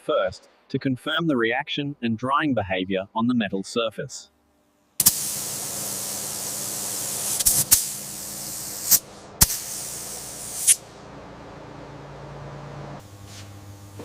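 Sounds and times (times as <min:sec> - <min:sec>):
spray can hissing: 0:05.0 - 0:10.8.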